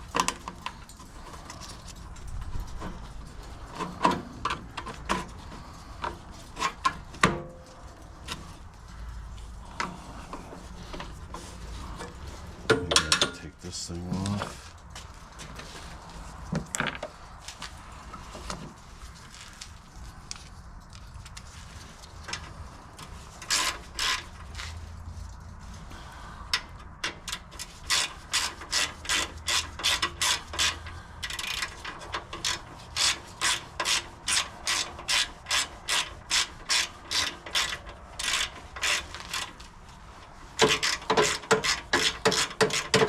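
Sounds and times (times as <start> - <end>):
ratchet tool clicking: 27.3 - 39.6.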